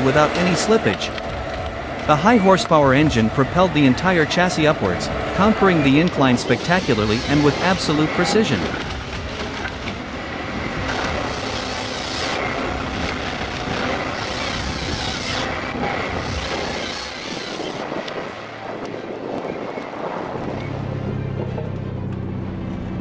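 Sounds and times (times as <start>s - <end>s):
heavy machine engine running: 0.0s - 23.0s
hissing bursts: 6.4s - 8.4s.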